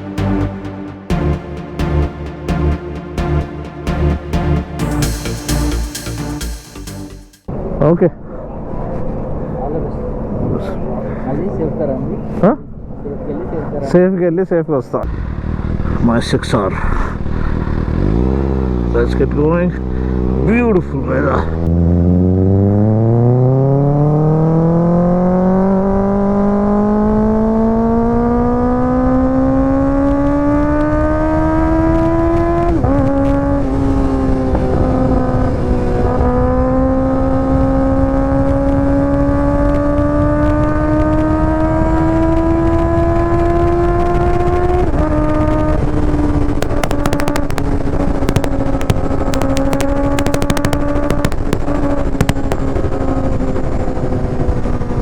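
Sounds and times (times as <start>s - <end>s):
motorcycle engine accelerating: 0.0s - 7.7s, 15.0s - 55.0s
exhaust crackles: 15.0s - 23.4s, 28.4s - 55.0s.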